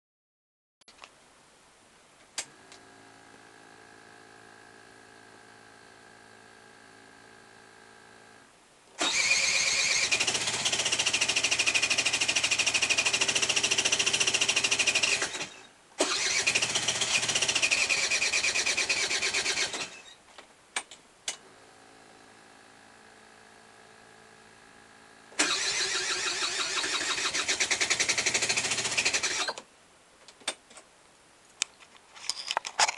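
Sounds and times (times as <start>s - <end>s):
electric starter cranking engine: 9.0s - 20.1s, 25.4s - 29.6s.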